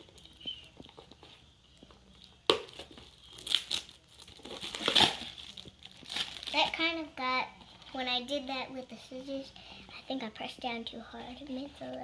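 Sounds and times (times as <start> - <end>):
scissors cutting packaging: 2.6 - 6.6
packaging crinkling and tearing: 2.6 - 6.8.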